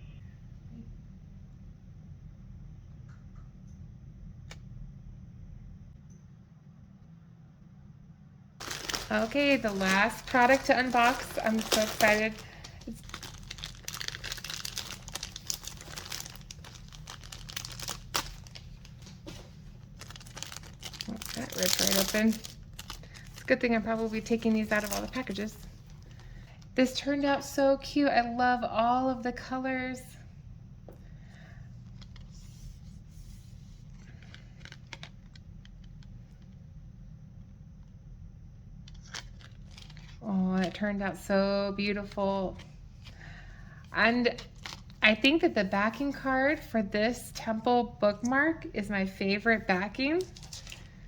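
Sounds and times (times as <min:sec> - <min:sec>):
steady low hum: 0:00.0 - 0:51.0
packaging crinkling: 0:08.6 - 0:26.8, 0:33.8 - 0:36.1, 0:38.9 - 0:40.8, 0:42.0 - 0:45.7, 0:49.4 - 0:51.0.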